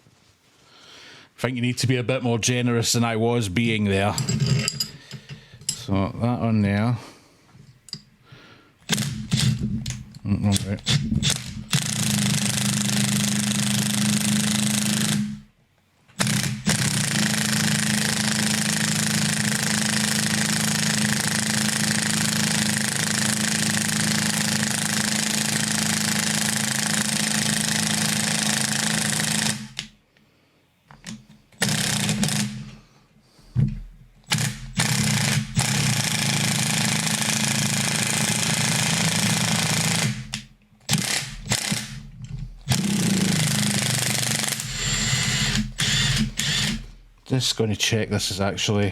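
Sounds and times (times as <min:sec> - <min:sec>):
impact wrench hammering: 0:08.9 - 0:10.0, 0:34.3 - 0:47.0.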